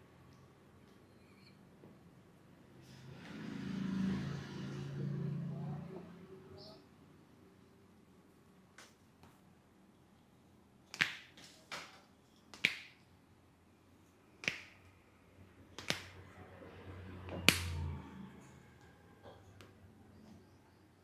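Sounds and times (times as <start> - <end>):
sharp hand slaps: 10.9 - 13.0, 14.4 - 14.9, 15.8 - 16.2, 17.4 - 17.8.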